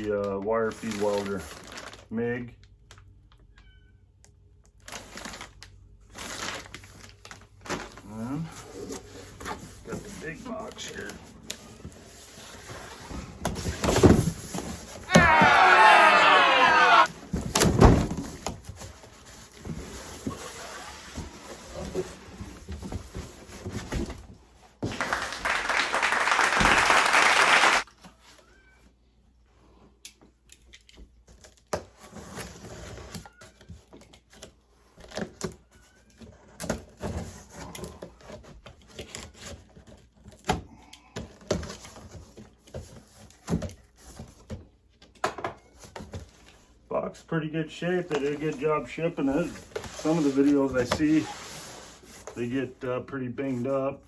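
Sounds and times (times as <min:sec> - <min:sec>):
packing material rustling: 0:00.8 - 0:02.1.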